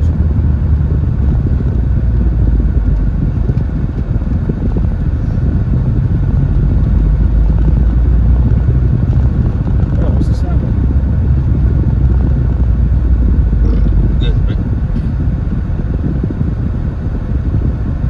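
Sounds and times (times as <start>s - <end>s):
car engine running: 0.0s - 18.0s
road and wind noise: 0.0s - 18.0s.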